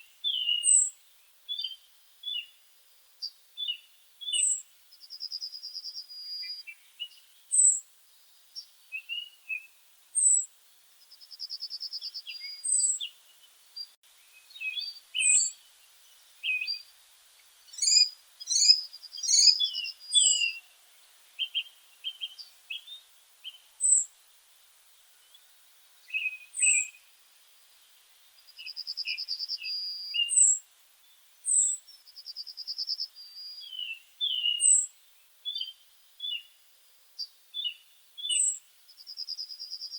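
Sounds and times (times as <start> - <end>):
short bird chirps: 0.0 - 2.6, 3.2 - 7.8, 11.2 - 15.7, 17.7 - 20.7, 21.4 - 24.1, 26.1 - 27.0, 28.4 - 30.6, 31.5 - 36.5, 37.2 - 39.9.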